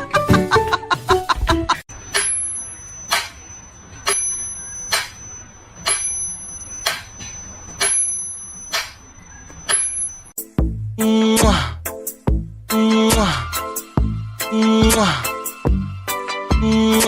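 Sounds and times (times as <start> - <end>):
small bell ringing: 2.0 - 10.4.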